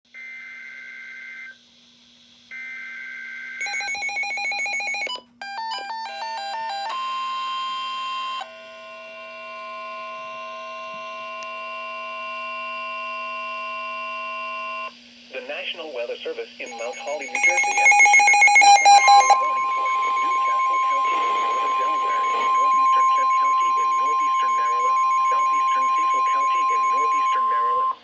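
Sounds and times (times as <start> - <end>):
rapid electronic beeping: 16.6 - 28.0
steady alarm tone: 16.6 - 28.0
two-pitch data tone bursts: 16.7 - 28.0.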